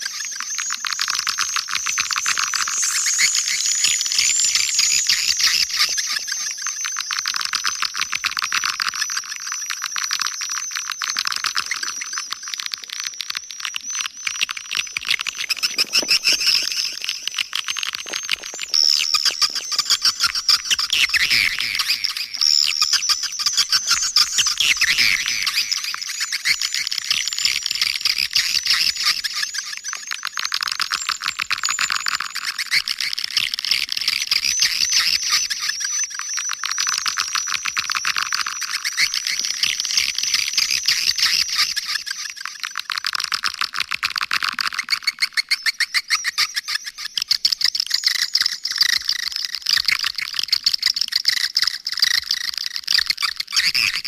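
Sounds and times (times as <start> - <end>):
swiftlets twittering: 0.0 - 29.8.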